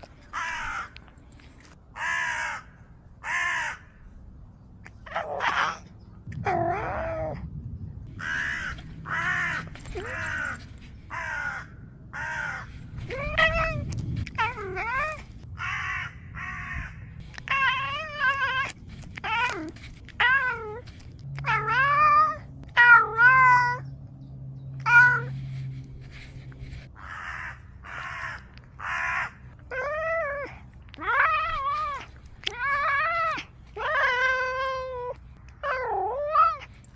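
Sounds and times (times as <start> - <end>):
cat meowing: 17.4 - 20.8.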